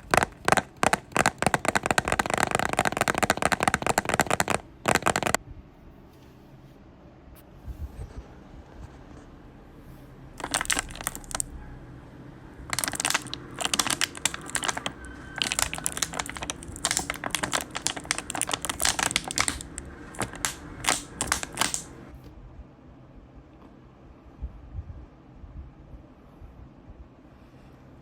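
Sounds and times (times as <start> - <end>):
close crackling and crinkling: 0.0 - 5.4, 10.4 - 11.5, 12.7 - 22.2.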